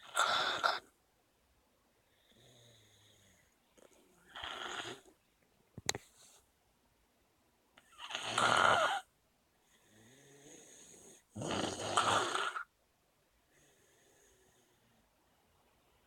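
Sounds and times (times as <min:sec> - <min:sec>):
person snoring: 0:10.0 - 0:12.7.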